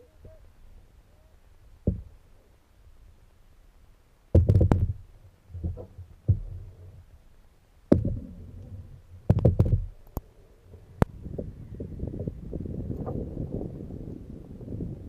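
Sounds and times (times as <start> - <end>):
kayaks and paddles bumping: 1.7 - 2.4, 4.3 - 7.2, 7.9 - 13.5.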